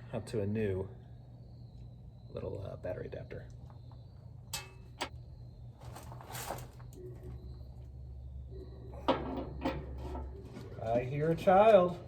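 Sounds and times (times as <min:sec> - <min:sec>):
low steady hum: 0:00.0 - 0:12.0
wire rustling: 0:05.8 - 0:07.0.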